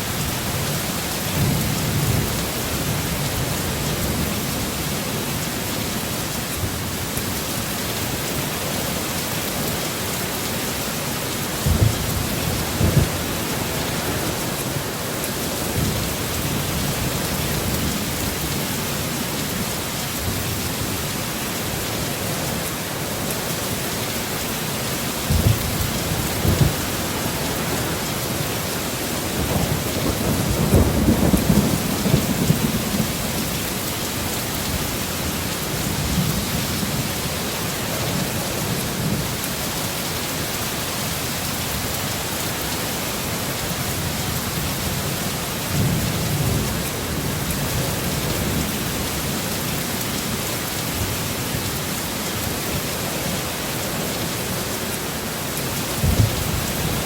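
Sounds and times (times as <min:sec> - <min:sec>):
heavy rain falling: 0:00.0 - 0:57.0
thunder rumbling: 0:11.4 - 0:18.6, 0:23.2 - 0:37.1, 0:55.9 - 0:57.0.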